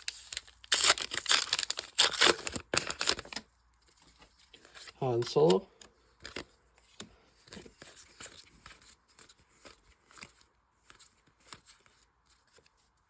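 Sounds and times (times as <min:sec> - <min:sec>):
trading cards clicking and rustling: 0:04.6 - 0:11.8.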